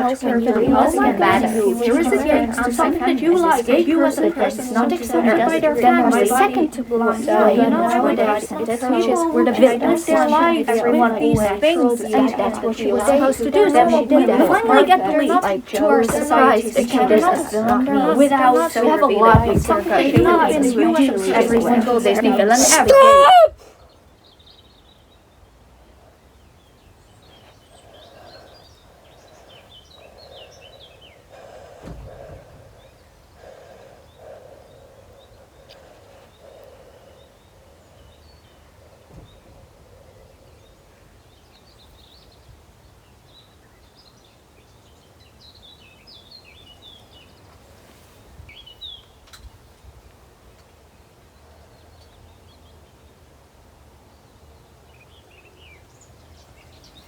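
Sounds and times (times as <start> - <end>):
thump: 19.3 - 20.6, 31.8 - 32.2.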